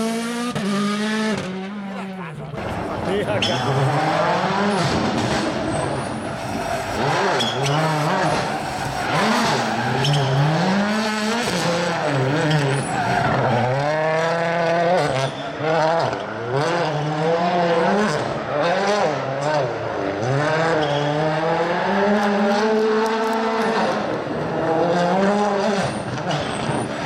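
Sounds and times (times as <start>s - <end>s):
rally car engine revving: 0.0s - 27.0s.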